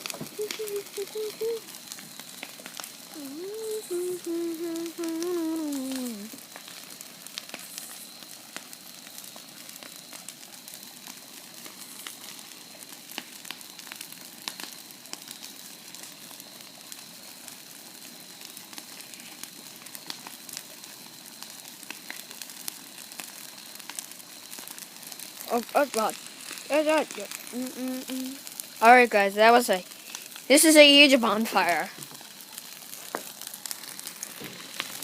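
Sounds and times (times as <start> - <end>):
bonfire crackling and popping: 0.0 - 35.0
person humming: 0.2 - 1.6, 3.2 - 6.4, 27.5 - 28.4.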